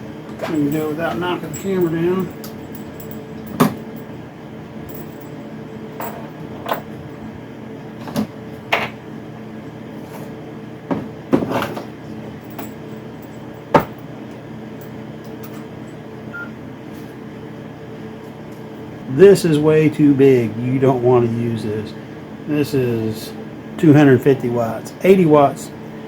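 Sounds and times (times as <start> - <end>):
steady background hum: 0.0 - 26.0
tools set down on workbench: 6.0 - 6.9, 13.7 - 14.0.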